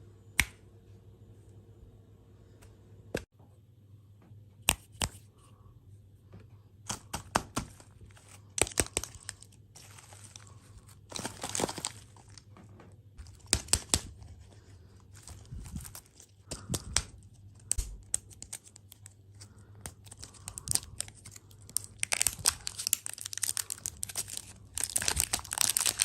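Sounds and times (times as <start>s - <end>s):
plastic packaging crinkling: 7.6s - 12.6s, 13.2s - 26.0s.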